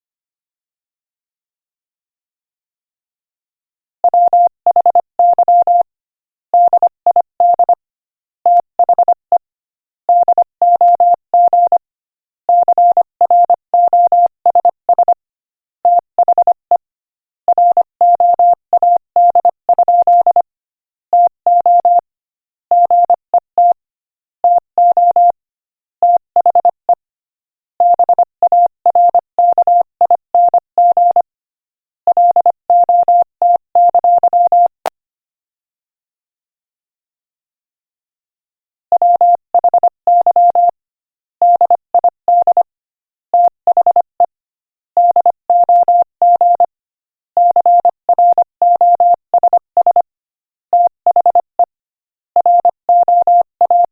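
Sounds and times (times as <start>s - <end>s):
morse code beeps: 4.1s - 5.9s, 6.6s - 7.8s, 8.5s - 9.2s, 10.1s - 11.8s, 12.5s - 15.2s, 15.9s - 16.8s, 17.6s - 20.5s, 21.2s - 22.0s, 22.7s - 23.8s, 24.5s - 25.4s, 26.0s - 27.0s, 27.8s - 31.3s, 32.1s - 34.8s, 38.9s - 40.8s, 41.4s - 42.7s, 43.4s - 44.4s, 45.0s - 46.8s, 47.4s - 50.1s, 50.7s - 51.8s, 52.4s - 53.9s.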